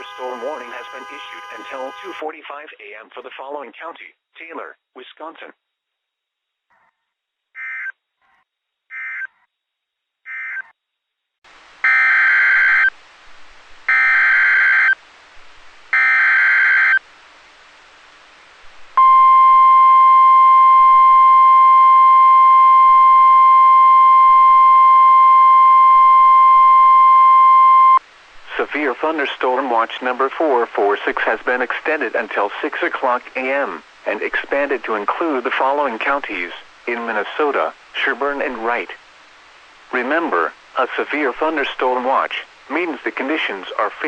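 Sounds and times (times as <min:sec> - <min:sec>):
steady loud warning tone: 0:00.0 - 0:02.2, 0:19.0 - 0:28.0.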